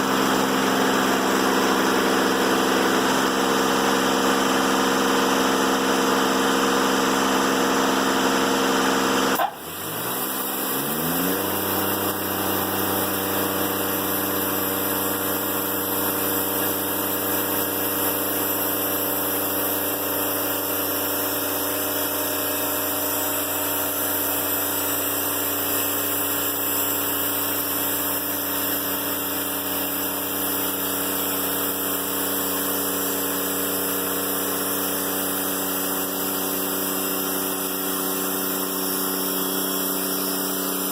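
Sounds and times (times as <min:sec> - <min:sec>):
diesel engine running: 0:00.0 - 0:19.1.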